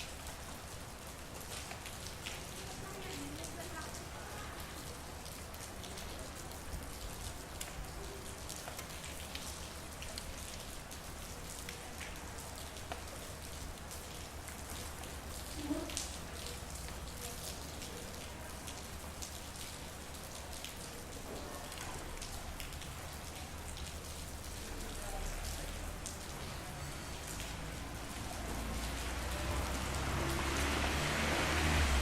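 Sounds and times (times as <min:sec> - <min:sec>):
rain drops ticking on surfaces: 0:00.0 - 0:32.0.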